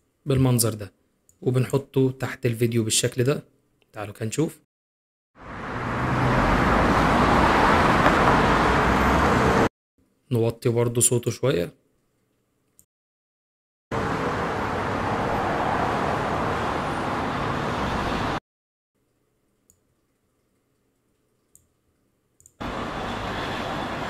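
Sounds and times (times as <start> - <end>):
street traffic noise: 5.4 - 9.7, 13.9 - 18.4, 22.6 - 24.0.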